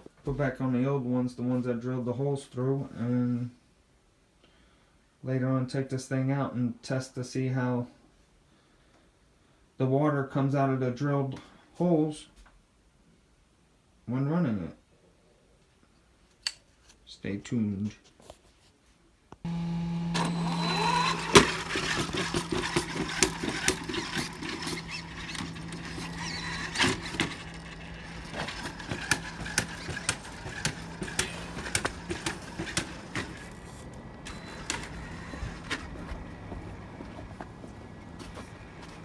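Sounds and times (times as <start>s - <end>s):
electric motor hum and whine: 19.5s - 39.0s
clicks and knocks from toy truck: 20.2s - 36.5s.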